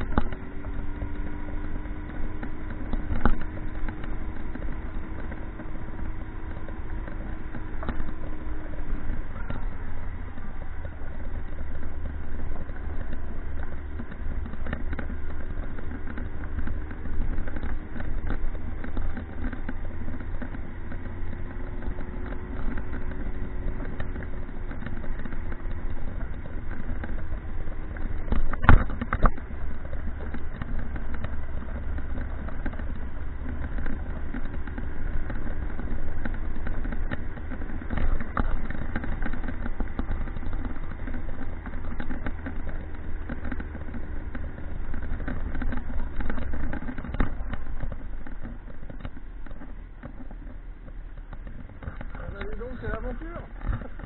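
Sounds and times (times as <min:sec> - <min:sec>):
motorcycle engine running: 0:00.0 - 0:54.0.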